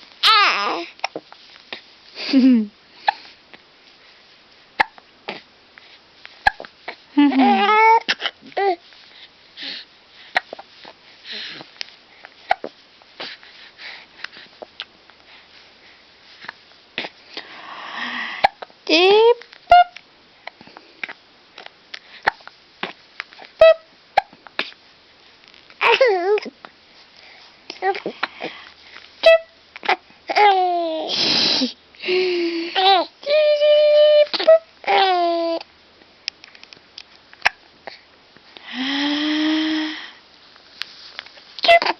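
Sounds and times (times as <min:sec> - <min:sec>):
baby crying and squealing: 0:00.2 - 0:00.9
baby vocal sound: 0:00.2 - 0:01.2, 0:07.3 - 0:08.8, 0:27.7 - 0:28.6, 0:29.2 - 0:31.8, 0:32.5 - 0:35.7, 0:41.6 - 0:41.9
baby hiccuping: 0:04.8 - 0:05.4, 0:06.4 - 0:06.7, 0:41.6 - 0:41.9
baby breathing and sniffing: 0:13.2 - 0:14.7, 0:31.0 - 0:31.8.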